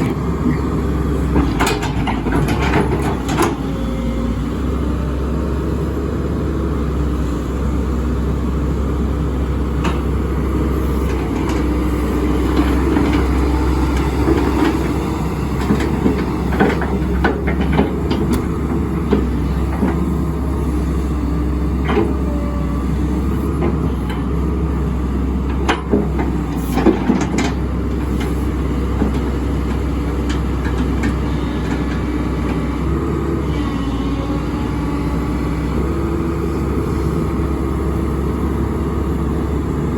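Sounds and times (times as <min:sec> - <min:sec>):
excavator diesel engine humming: 0:00.0 - 0:39.9
metallic clanks and knocks: 0:01.3 - 0:03.6.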